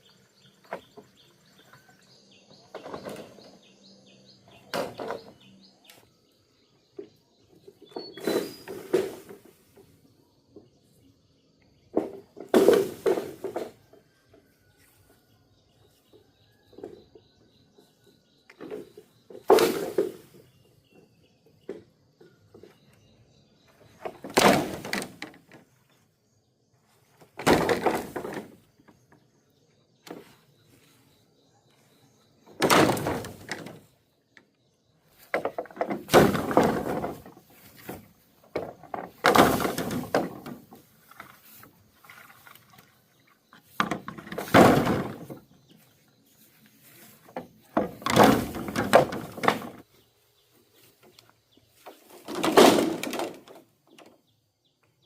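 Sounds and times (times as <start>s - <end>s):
bamboo knocking and cracking: 4.6s - 6.0s, 11.9s - 13.9s, 18.5s - 20.4s, 23.8s - 25.7s, 27.2s - 29.3s, 32.4s - 34.5s, 35.1s - 42.6s, 43.6s - 49.9s, 51.0s - 54.2s.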